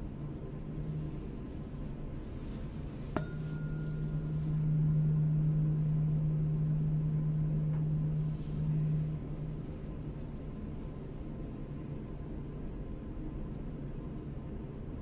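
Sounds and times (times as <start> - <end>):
tuning fork struck: 0.6 - 1.7, 3.0 - 10.2
tuning fork ringing: 0.6 - 10.7.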